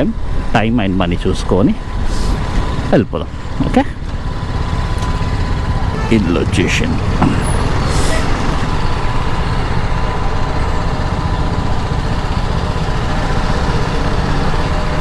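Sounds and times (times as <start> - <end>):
motorcycle engine running: 3.2 - 15.0.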